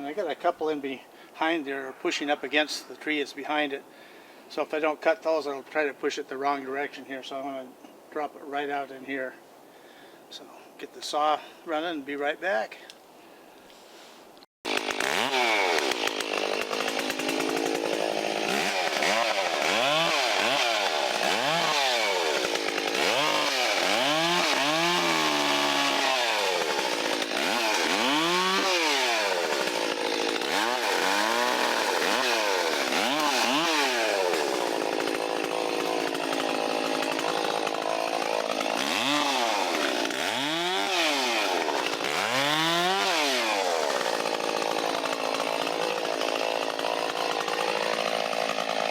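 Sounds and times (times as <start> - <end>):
chainsaw revving: 14.7 - 48.9.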